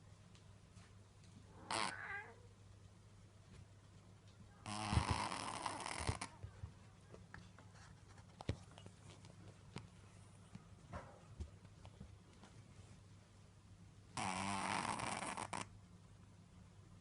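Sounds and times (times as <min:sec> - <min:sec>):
cat snoring: 0:04.6 - 0:06.3, 0:14.2 - 0:15.7.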